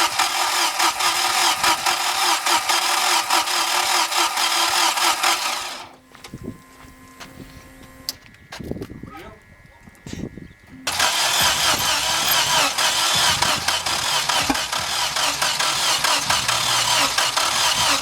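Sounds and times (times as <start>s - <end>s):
engine cranking by starter motor: 0.0s - 6.0s, 10.8s - 18.0s.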